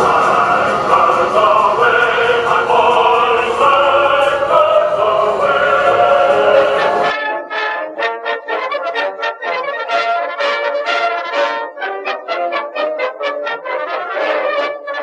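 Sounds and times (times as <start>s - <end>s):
choral music: 0.0s - 15.0s.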